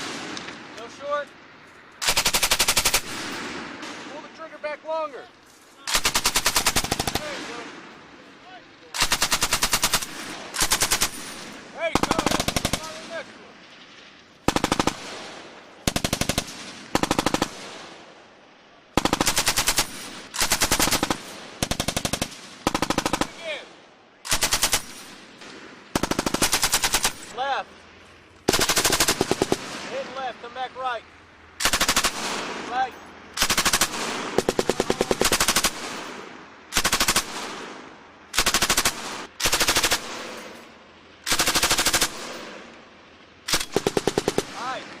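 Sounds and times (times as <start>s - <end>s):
gunfire echo: 0.0s - 0.8s, 2.0s - 4.5s, 5.9s - 8.1s, 9.0s - 27.4s, 31.6s - 42.7s
machine gun bursts: 2.0s - 3.2s, 5.9s - 7.3s, 9.0s - 11.4s, 12.0s - 13.1s, 19.0s - 23.5s, 24.3s - 25.1s, 26.0s - 27.3s, 28.5s - 29.6s, 31.6s - 32.4s, 33.4s - 36.0s, 36.7s - 37.4s, 38.4s - 40.6s, 41.3s - 42.4s.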